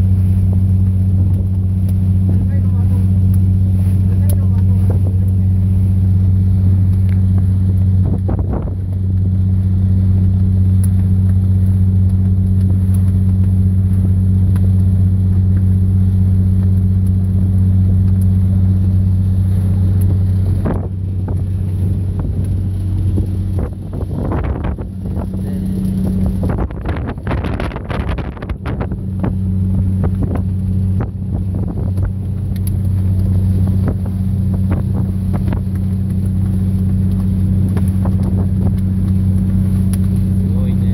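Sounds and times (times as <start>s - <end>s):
boat engine droning: 0.0s - 40.9s
rushing splashy water: 0.0s - 40.9s.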